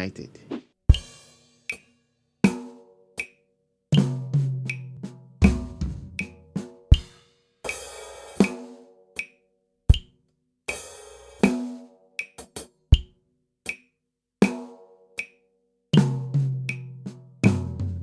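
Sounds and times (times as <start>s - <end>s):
bass drum: 4.0s - 6.4s, 16.0s - 18.0s.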